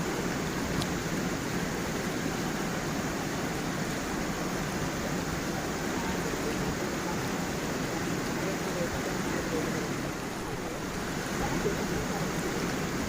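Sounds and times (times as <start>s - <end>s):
water rushing over stones: 0.0s - 13.0s.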